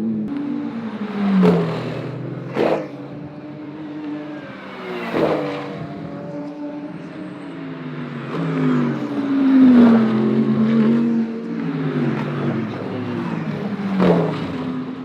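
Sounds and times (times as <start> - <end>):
race cars passing at speed: 0.0 - 15.0
short sharp crack: 1.5 - 3.0.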